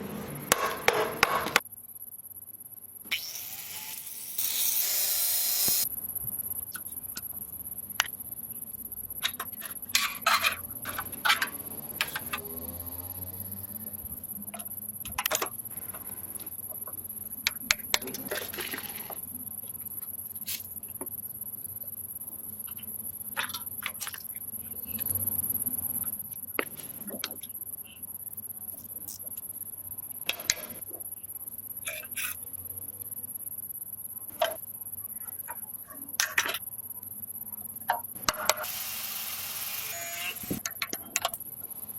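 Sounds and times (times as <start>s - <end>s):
metal tools clicking and scraping: 9.2s - 12.5s.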